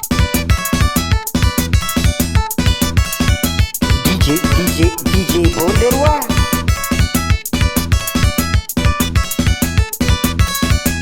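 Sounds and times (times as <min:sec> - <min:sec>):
fast drum beat: 0:03.9 - 0:06.7.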